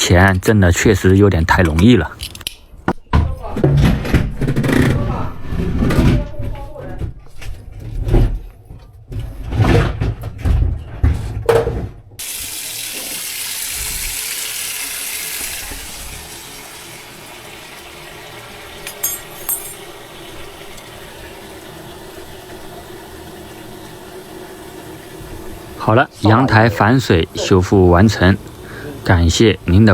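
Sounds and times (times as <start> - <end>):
water running from faucet: 12.2 - 29.9.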